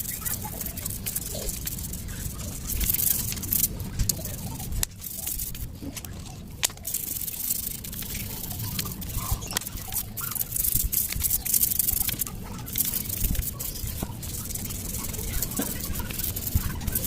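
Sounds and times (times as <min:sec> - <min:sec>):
stiff brush scrubbing metal: 0:06.7 - 0:17.0.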